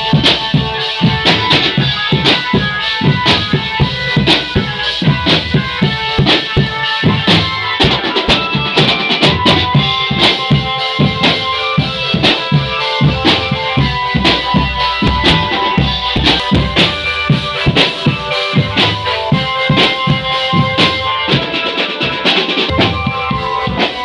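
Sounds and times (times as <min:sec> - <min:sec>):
marching drum band playing: 0:00.0 - 0:24.0.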